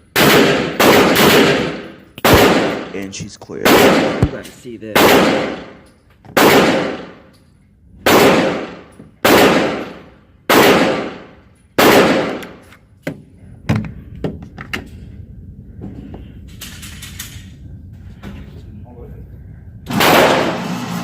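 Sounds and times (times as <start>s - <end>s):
pistol shots echoing: 0.0s - 7.3s, 8.0s - 12.6s, 19.9s - 20.7s.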